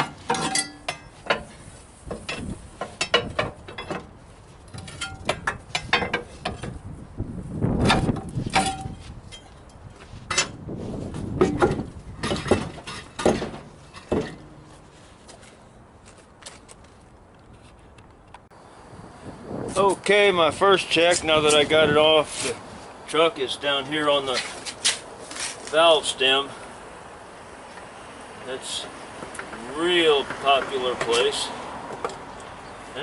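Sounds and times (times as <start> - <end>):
metal scraping: 0.0 - 6.8
tire tool clanking on wheel rim: 0.0 - 7.0, 7.8 - 14.9, 29.2 - 32.5.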